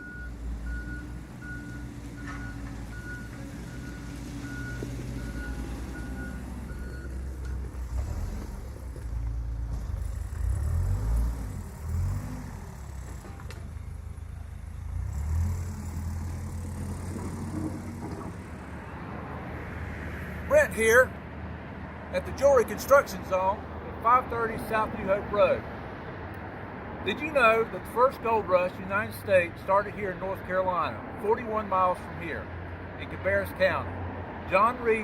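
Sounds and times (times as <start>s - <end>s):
reversing alarm beeping: 0.0s - 7.2s
diesel engine running: 0.0s - 19.0s.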